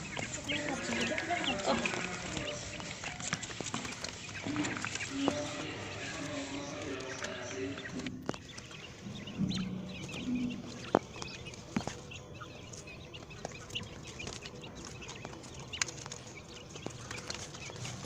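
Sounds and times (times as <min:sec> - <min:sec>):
low clucking: 0:00.0 - 0:12.3
quail chirping: 0:00.0 - 0:18.0.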